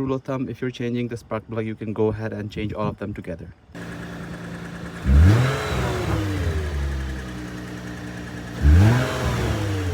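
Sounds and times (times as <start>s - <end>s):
car engine idling and revving: 3.8s - 9.9s.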